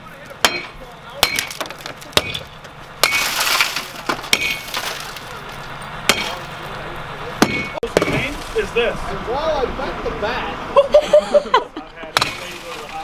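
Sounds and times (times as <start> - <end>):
window glass shattering: 0.4 - 8.7, 12.2 - 13.0.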